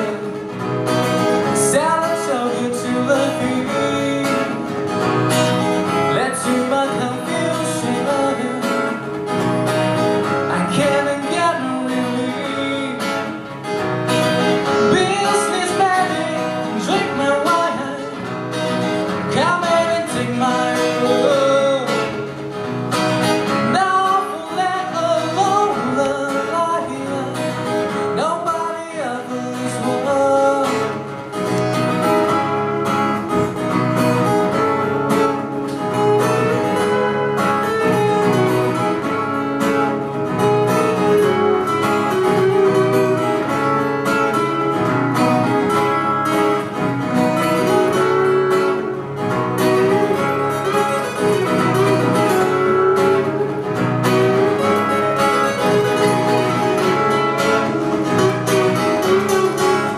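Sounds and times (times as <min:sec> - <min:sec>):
live acoustic guitar music: 0:00.0 - 0:59.9.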